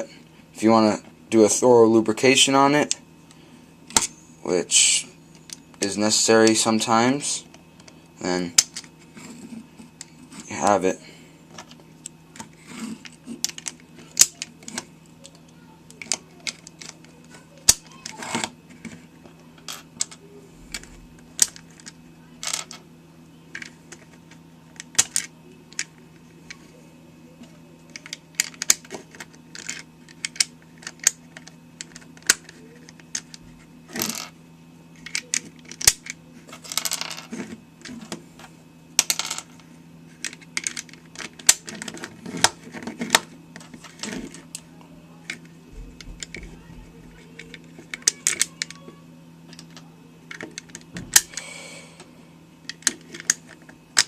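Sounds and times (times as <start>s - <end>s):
steady low hum: 0.0s - 54.0s
plastic puzzle pieces clicking: 40.2s - 44.3s, 47.4s - 48.8s.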